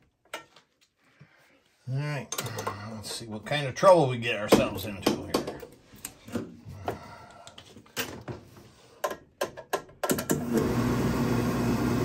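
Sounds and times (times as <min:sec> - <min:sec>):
clicks and knocks: 0:09.0 - 0:10.4
furnace burner motor humming: 0:10.3 - 0:12.0.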